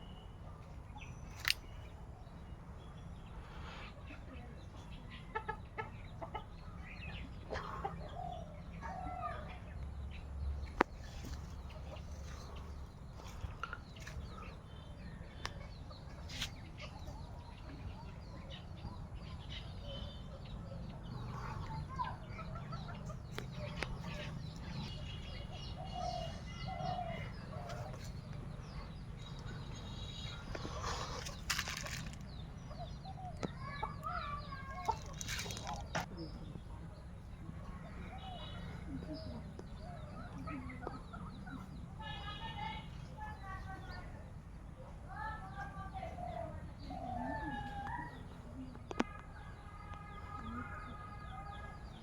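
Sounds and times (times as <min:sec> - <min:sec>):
chickens clucking: 0:03.7 - 0:09.0, 0:20.2 - 0:36.4.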